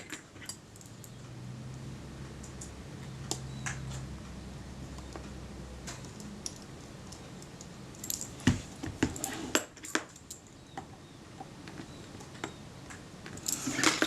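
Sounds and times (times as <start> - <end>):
metal tools clicking and tapping: 2.3 - 4.3, 5.9 - 10.9.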